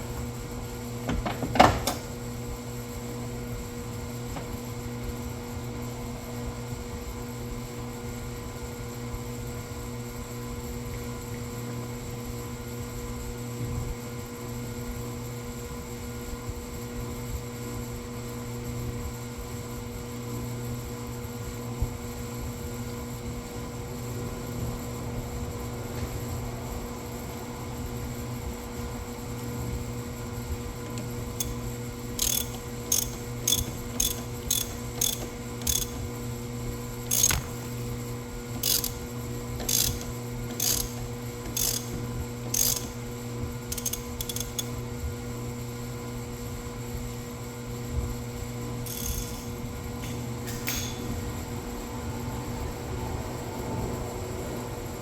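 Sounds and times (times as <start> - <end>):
mechanical hum: 0.0 - 55.0
ratchet wrench clicking: 31.4 - 31.6, 32.2 - 36.0, 37.1 - 37.8, 38.6 - 39.0, 39.6 - 43.0, 43.7 - 44.7, 48.9 - 49.6.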